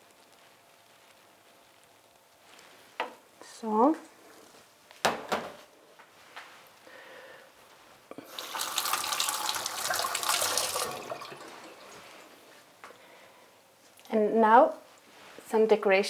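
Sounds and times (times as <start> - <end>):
kitchen tap running: 8.2 - 12.8.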